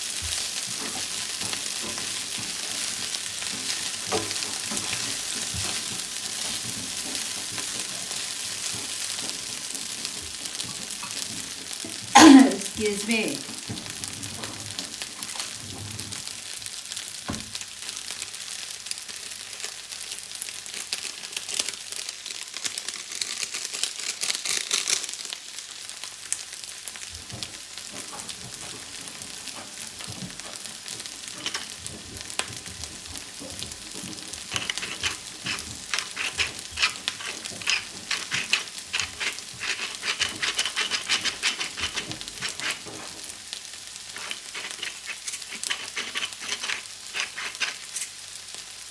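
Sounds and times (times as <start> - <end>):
fried rice sizzling in a pan: 0.0 - 12.2, 13.4 - 48.9
spatula scraping a pan: 28.9 - 43.3, 44.0 - 48.2.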